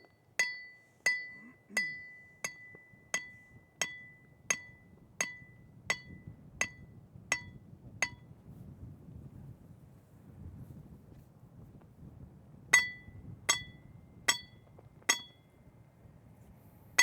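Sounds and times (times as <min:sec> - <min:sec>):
hammer striking metal: 0:15.1 - 0:15.4.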